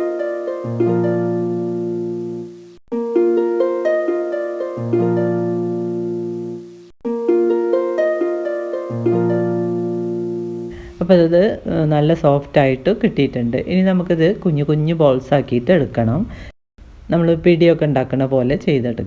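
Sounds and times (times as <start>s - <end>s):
plucked-string music loop: 0.0s - 11.1s.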